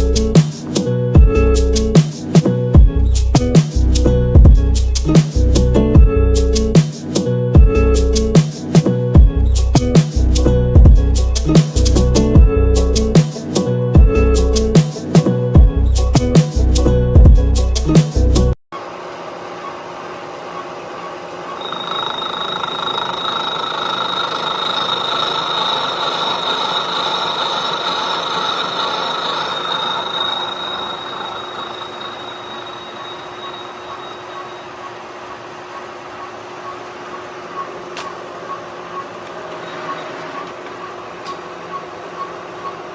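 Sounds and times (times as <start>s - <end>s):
milling machine spindle whine: 18.8s - 37.9s.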